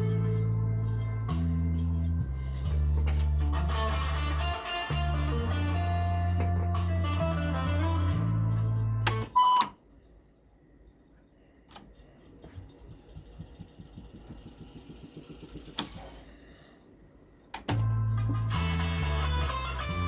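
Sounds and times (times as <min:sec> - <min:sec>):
guitar music: 0:02.9 - 0:09.3, 0:17.8 - 0:20.0.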